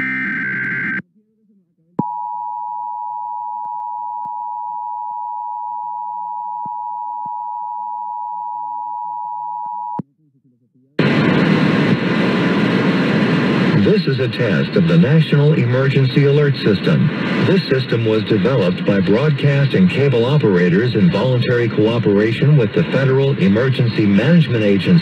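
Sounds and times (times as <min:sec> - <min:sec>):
loud noisy sound: 0:11.0 - 0:25.0.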